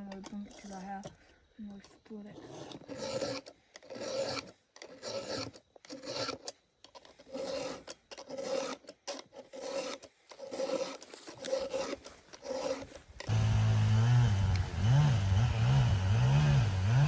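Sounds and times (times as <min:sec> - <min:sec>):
hand tool rasping strokes: 0:01.8 - 0:17.0
engine running loudly: 0:13.3 - 0:17.0.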